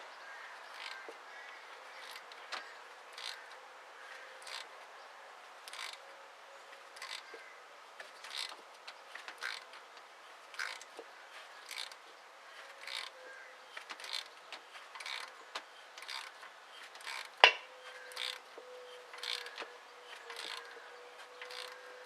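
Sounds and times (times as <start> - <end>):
thread tap creaking and clicking: 0.7 - 3.6, 4.4 - 4.7, 5.6 - 6.1, 6.9 - 7.4, 8.0 - 12.0, 12.7 - 22.0.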